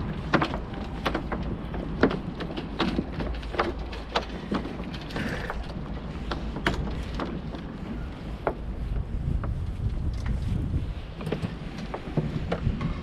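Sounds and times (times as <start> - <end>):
rigging clicks and knocks: 0.0 - 7.8
wind rumble on microphone: 0.0 - 13.0.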